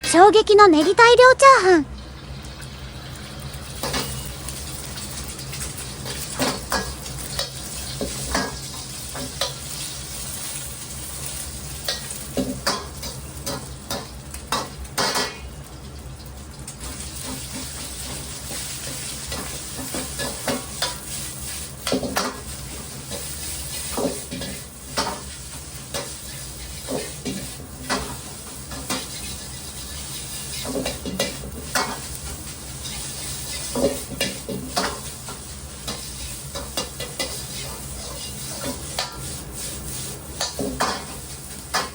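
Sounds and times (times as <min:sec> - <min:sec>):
rice sizzling in a pan: 0:01.9 - 0:41.9
metal utensil scraping a pan: 0:23.1 - 0:39.4.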